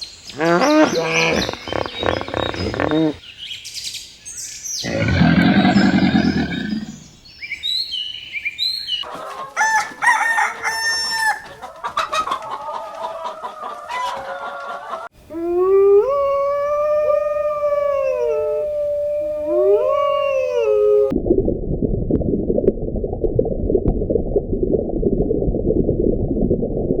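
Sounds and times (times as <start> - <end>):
bird chirps: 0.0 - 9.1
long drawn-out animal calls: 0.4 - 3.2, 4.8 - 7.1
loud low animal call: 0.4 - 3.2, 4.8 - 7.1
chickens clucking: 9.0 - 15.1
rooster crowing: 9.6 - 11.5.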